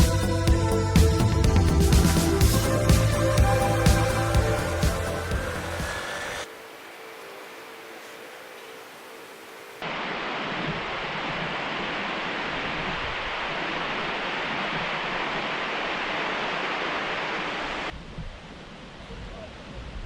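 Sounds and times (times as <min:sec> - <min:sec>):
river water rushing: 0:02.0 - 0:17.9.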